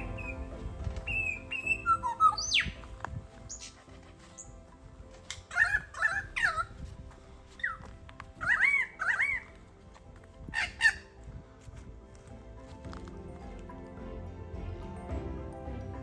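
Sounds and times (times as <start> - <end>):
bird whistling calls: 0.0 - 2.9, 5.3 - 6.8, 7.6 - 7.8, 8.4 - 9.6
faint background music: 0.0 - 16.0.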